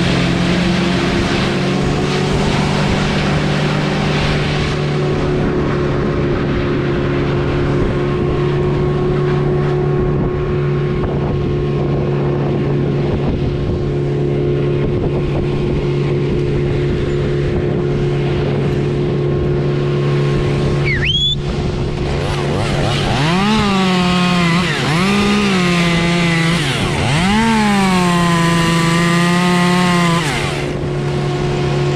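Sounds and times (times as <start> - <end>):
small engine running: 0.0 - 31.9.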